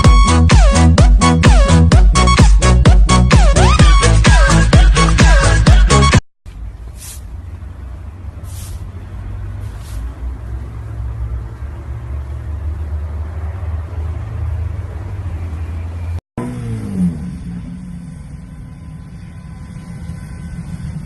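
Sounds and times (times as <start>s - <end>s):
low steady rumble: 6.5s - 13.2s, 13.8s - 21.0s
short hisses: 7.0s - 7.3s, 8.4s - 8.9s, 9.6s - 10.1s.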